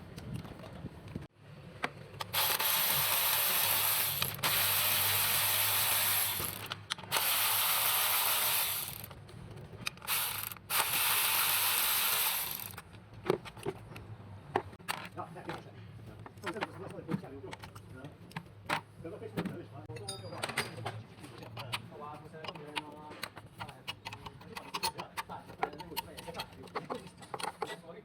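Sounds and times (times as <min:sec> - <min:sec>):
power ratchet whirring: 0:02.2 - 0:09.2, 0:10.0 - 0:12.8.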